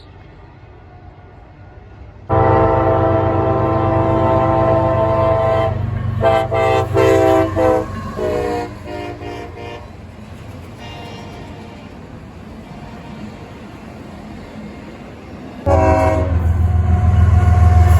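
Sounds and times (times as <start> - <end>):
locomotive air horn: 2.3 - 10.0, 15.7 - 17.9
locomotive engine rumble: 2.3 - 13.6, 15.7 - 17.9.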